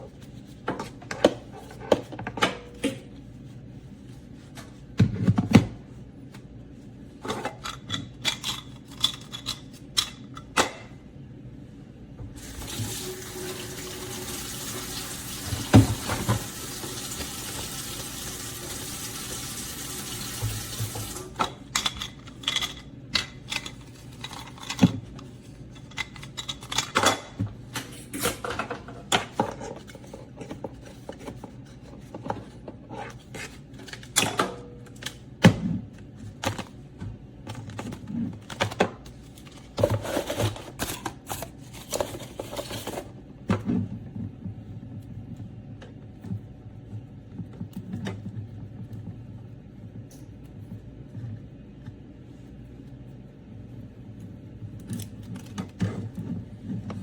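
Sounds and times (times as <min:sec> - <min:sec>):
water running from a tap: 0:12.4 - 0:21.4.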